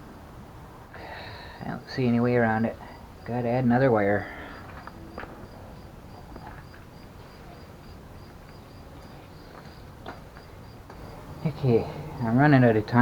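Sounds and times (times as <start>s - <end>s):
insect chirping: 2.6s - 13.0s.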